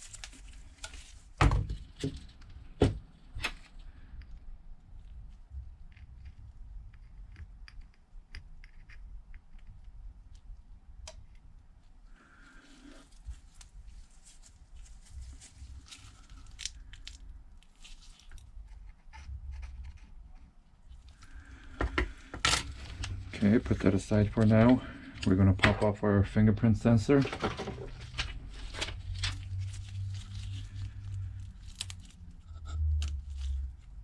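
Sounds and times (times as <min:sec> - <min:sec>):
low handling rumble: 0:21.4 - 0:34.0.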